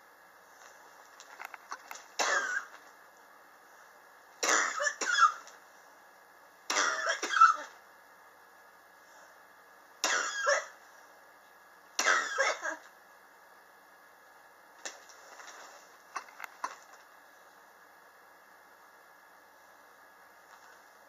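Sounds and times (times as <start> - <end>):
person coughing: 2.2 - 2.8, 4.4 - 5.4, 6.7 - 7.8, 10.0 - 10.8, 12.0 - 12.9.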